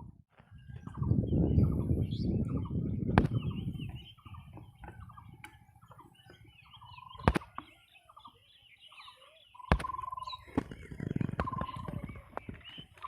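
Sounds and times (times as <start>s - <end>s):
small birds chirping: 0.4s - 13.0s
held bird trill: 0.6s - 13.0s.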